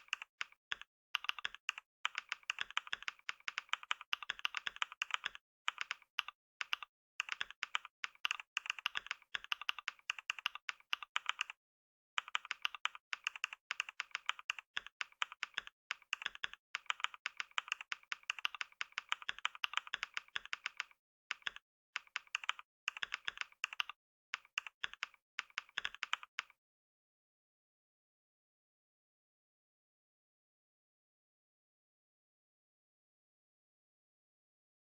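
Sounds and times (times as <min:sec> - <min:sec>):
fast typing on keyboard: 0:00.0 - 0:11.6, 0:12.2 - 0:26.6.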